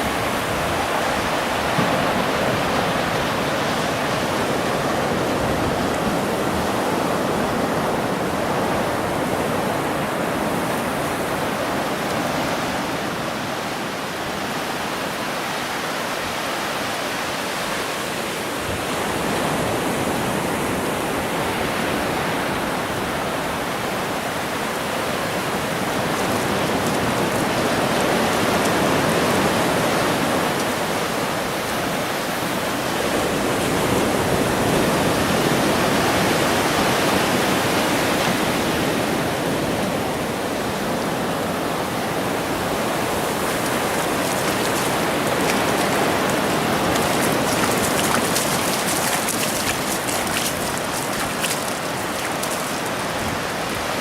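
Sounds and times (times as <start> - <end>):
ocean surf breaking: 33.0 - 54.0.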